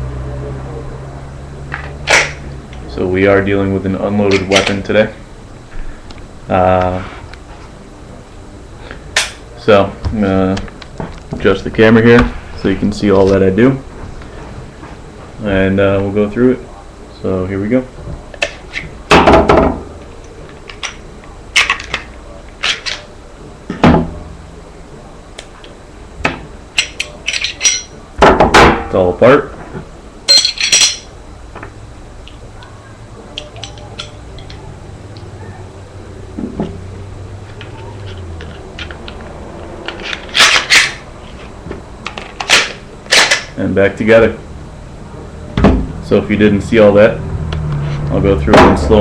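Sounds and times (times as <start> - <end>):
pistol parts clicking and clacking: 39.9 - 41.0, 42.1 - 43.5.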